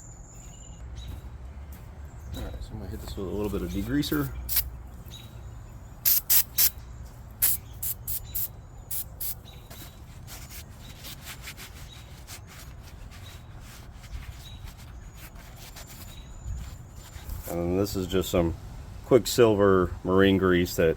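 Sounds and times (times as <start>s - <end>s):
spray hissing bursts: 4.2s - 4.7s, 6.0s - 6.7s, 7.4s - 9.4s.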